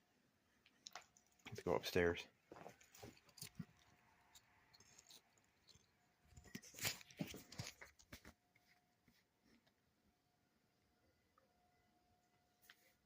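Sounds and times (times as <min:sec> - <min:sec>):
footsteps on barn floor: 0:02.5 - 0:03.2.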